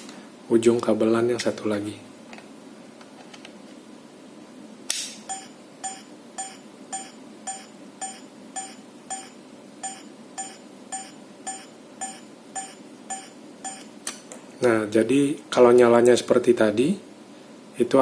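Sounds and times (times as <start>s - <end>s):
sharp click: 4.9s - 5.3s
short electronic beeps: 5.3s - 13.9s.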